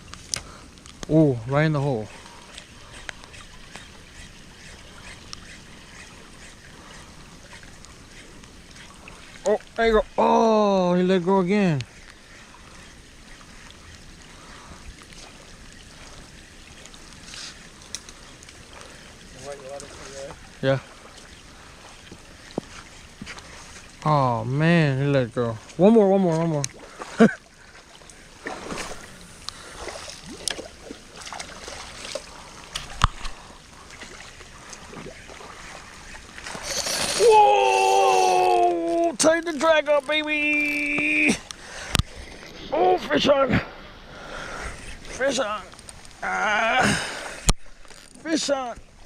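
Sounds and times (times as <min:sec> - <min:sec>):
faint clicks: 0:00.0 - 0:01.1, 0:16.8 - 0:19.0
steady rain: 0:00.0 - 0:48.8.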